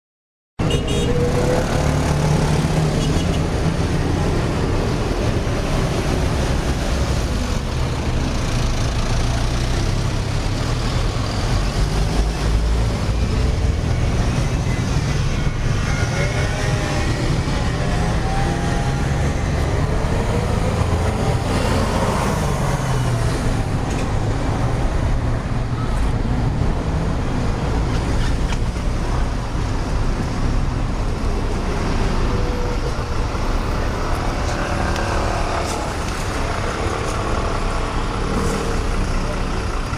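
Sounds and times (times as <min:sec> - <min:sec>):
car horns: 0:00.6 - 0:01.8
traffic rumble: 0:00.6 - 0:39.9.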